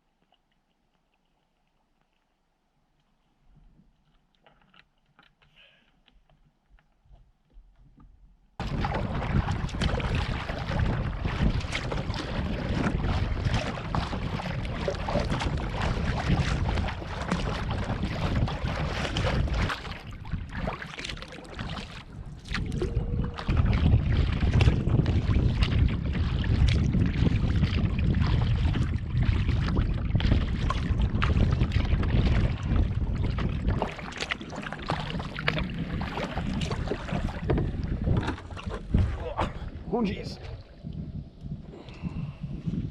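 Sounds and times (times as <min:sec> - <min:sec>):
water noise from kayak: 0:08.6 - 0:42.9
wind buffeting microphone: 0:08.6 - 0:42.9.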